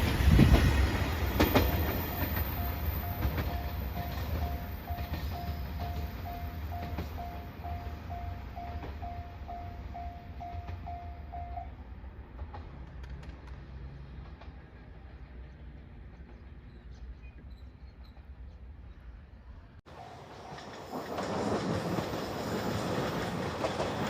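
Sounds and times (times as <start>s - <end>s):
passing train rumble: 0.0s - 24.0s
level crossing warning bell: 1.9s - 11.7s.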